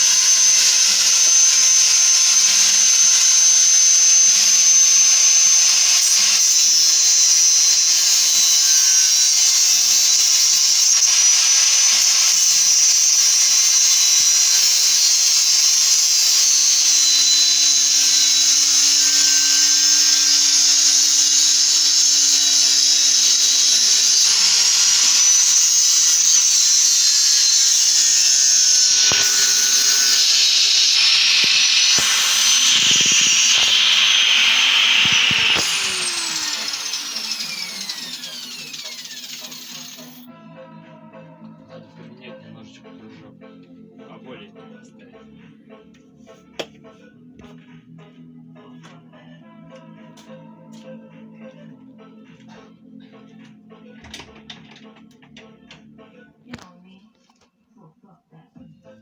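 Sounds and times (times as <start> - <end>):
power tool high-pitched hiss: 0.0 - 40.3.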